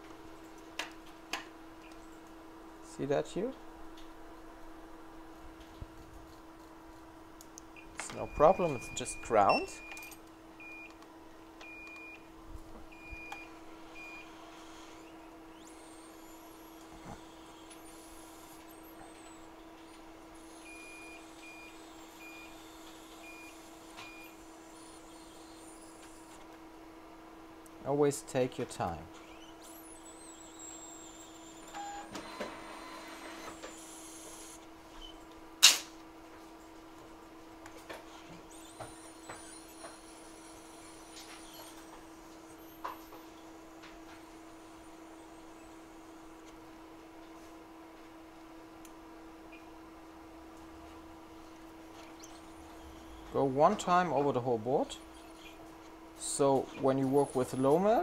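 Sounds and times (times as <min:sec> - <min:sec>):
low equipment hum: 0:00.0 - 0:58.0
short electronic beeps: 0:07.8 - 0:10.9.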